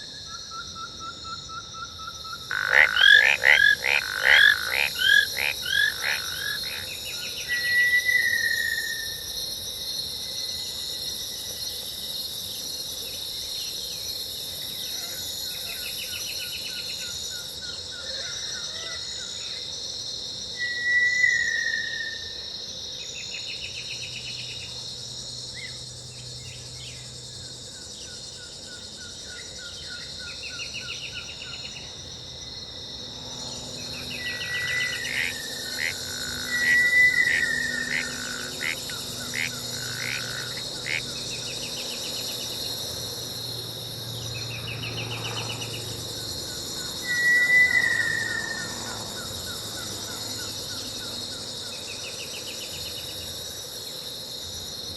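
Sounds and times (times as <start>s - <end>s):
pulsed insect trills: 0.0s - 54.9s
shrill insect chorus: 0.0s - 54.9s
falling whistled animal call: 47.0s - 48.6s.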